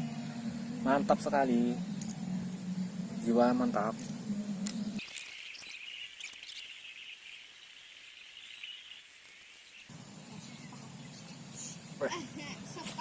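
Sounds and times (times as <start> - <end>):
low hum: 0.0 - 5.0
insects chirring: 0.0 - 13.0.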